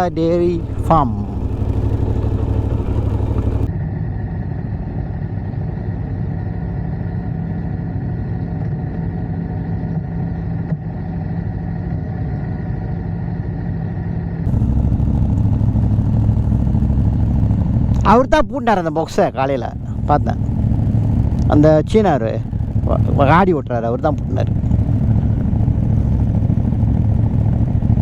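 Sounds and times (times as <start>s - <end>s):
motorcycle engine running: 0.0s - 3.7s, 14.5s - 28.0s.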